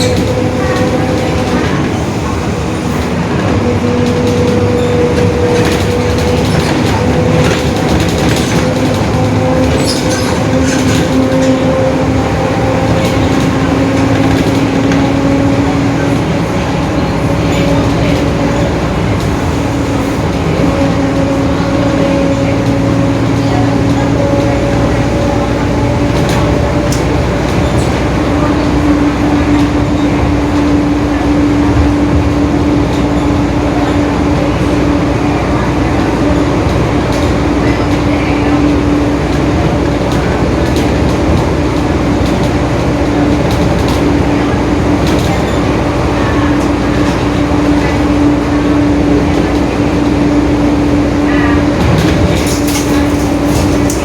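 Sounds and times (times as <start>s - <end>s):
bus engine and road noise: 0.0s - 54.0s.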